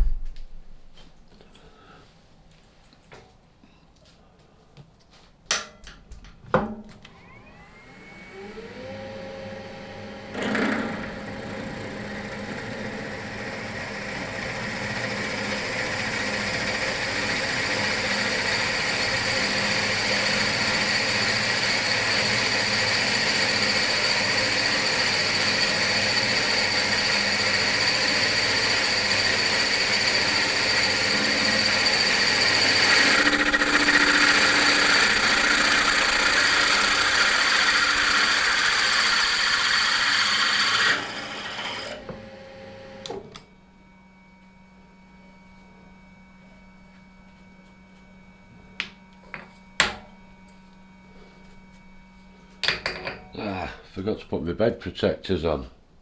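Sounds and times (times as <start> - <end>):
electric drill whining: 7.1 - 43.4
drill bit cutting metal: 7.6 - 43.2.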